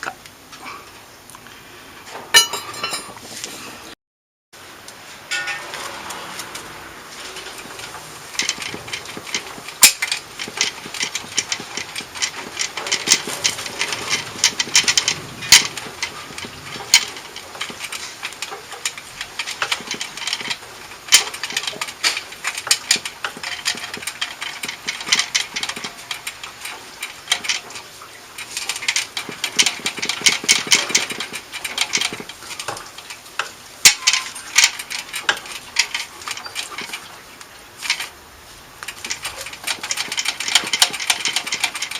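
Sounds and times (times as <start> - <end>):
hand tool rapid clicking: 7.6 - 27.8, 28.4 - 32.8, 38.8 - 41.9.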